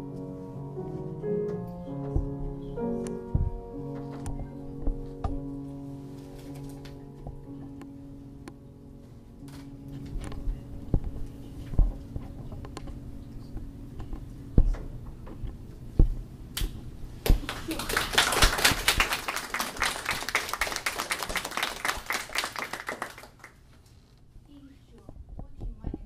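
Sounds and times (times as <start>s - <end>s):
scattered knocks and claps: 17.2s - 23.6s
audience applause: 17.3s - 23.6s.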